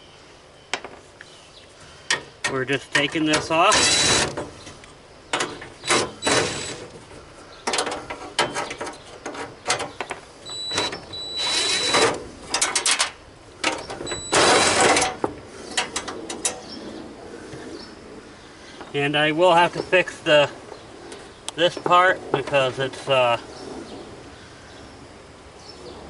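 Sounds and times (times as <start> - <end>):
rattling scraping and clicking: 2.1 - 16.8.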